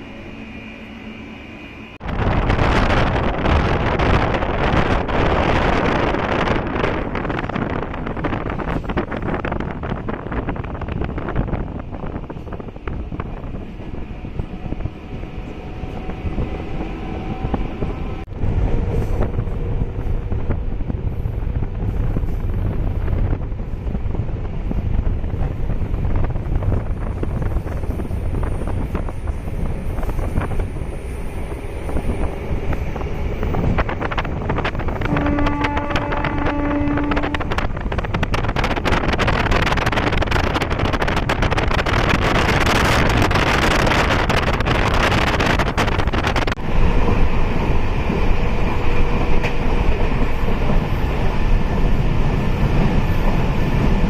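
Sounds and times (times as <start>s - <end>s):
train wheels rumbling on rail: 0.0s - 54.0s
wind on microphone: 2.0s - 54.0s
train horn: 34.8s - 37.9s.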